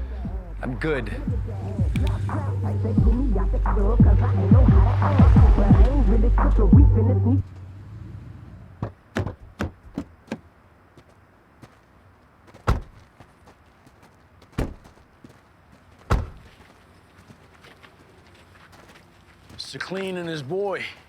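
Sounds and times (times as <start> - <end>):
sharp knocks and thuds: 8.8 - 10.4, 12.5 - 13.1, 14.5 - 15.0, 16.1 - 16.6.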